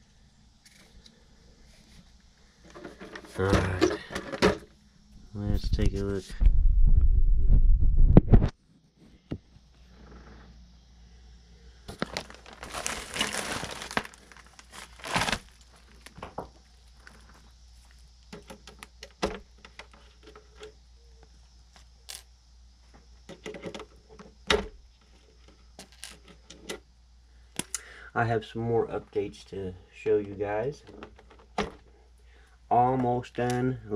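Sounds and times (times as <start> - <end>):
packaging wrap crinkling and tearing: 11.9 - 16.2.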